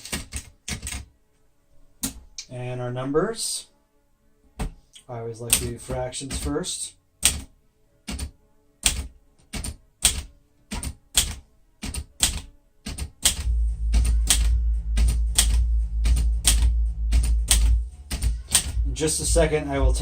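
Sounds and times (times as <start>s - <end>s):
manual typewriter key strikes: 8.8s - 13.5s, 14.2s - 16.6s, 17.2s - 18.8s
steady low hum: 13.3s - 20.0s.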